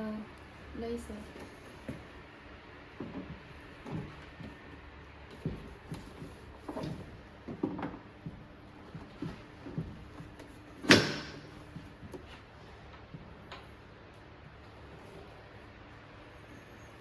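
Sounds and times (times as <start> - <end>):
loud sharp knock: 10.9 - 11.4.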